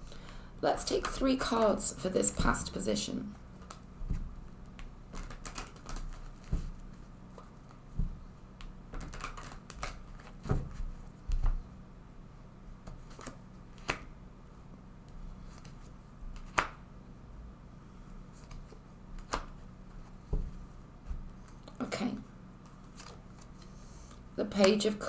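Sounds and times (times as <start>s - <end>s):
soft thumps: 7.9s - 8.3s, 20.3s - 21.3s
cards shuffled and laid down: 18.4s - 21.7s, 22.6s - 24.8s.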